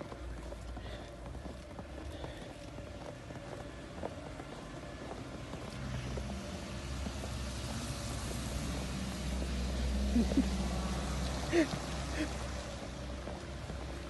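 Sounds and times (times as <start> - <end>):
passing vehicle engine rumble: 3.1 - 14.0.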